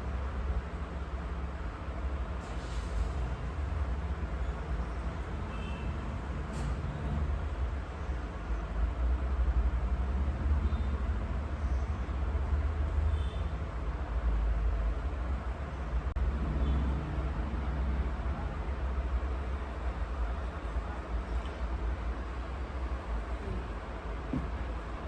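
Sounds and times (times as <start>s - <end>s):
steady low rumble: 0.0s - 25.0s.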